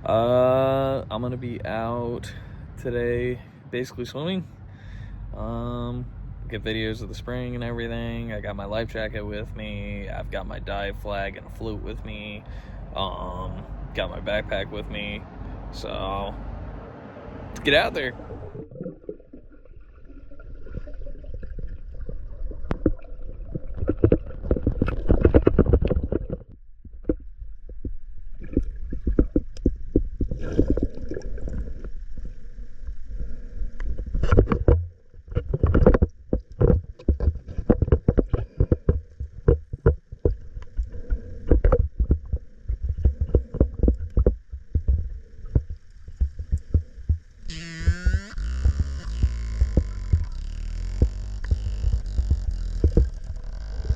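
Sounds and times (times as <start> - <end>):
steady hum: 0.0 - 19.7, 38.7 - 53.9
water sloshing and splashing: 6.5 - 53.9
muffled knocks and bumps: 34.2 - 40.5, 41.4 - 53.9.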